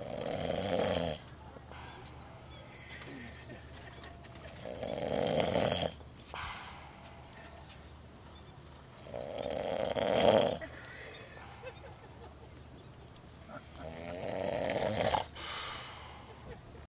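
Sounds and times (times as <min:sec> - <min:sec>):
person snoring loudly: 0:00.0 - 0:01.2, 0:04.6 - 0:06.0, 0:09.0 - 0:10.6, 0:13.7 - 0:16.0
soft breath: 0:06.3 - 0:07.9.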